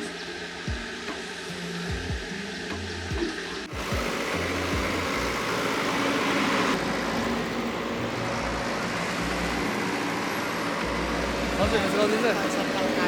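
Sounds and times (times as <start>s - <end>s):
backhoe diesel engine running: 0.0s - 13.0s.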